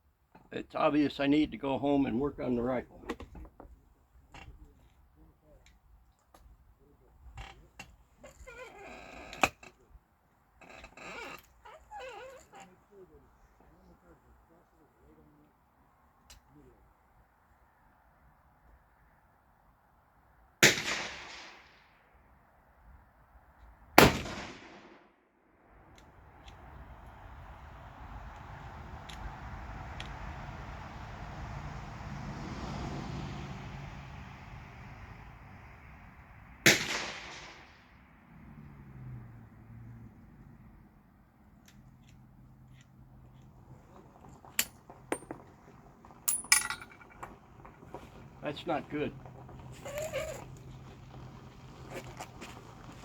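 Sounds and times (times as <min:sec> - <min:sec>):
rifle shots with echo: 0:20.6 - 0:21.8, 0:24.0 - 0:25.0, 0:36.6 - 0:37.7.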